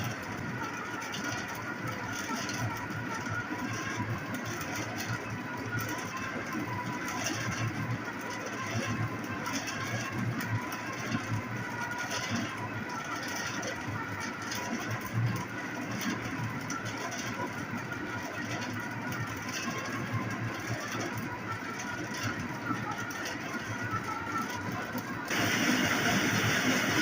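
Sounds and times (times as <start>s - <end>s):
power tool running: 25.3s - 27.0s.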